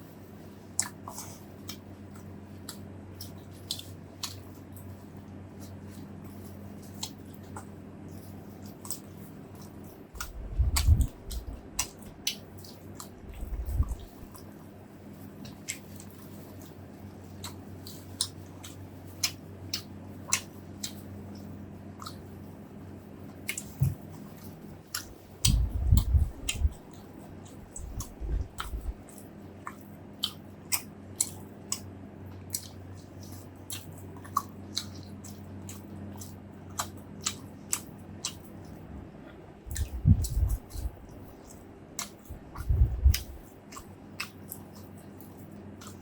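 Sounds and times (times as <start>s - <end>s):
faint low hum: 0.0s - 46.0s
mouth chewing food: 0.5s - 46.0s
low thumps: 25.4s - 26.8s, 42.4s - 43.4s.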